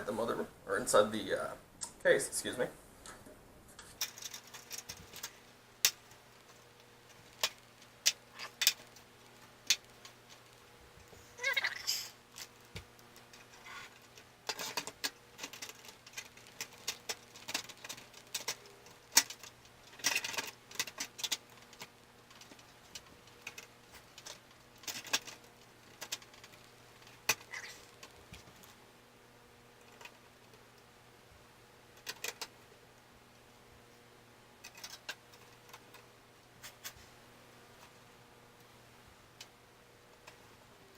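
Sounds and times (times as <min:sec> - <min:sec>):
faint steady hum: 0:00.0 - 0:40.9
computer parts clicking and rustling: 0:03.0 - 0:28.8, 0:29.6 - 0:30.9, 0:31.8 - 0:33.6, 0:34.6 - 0:37.1.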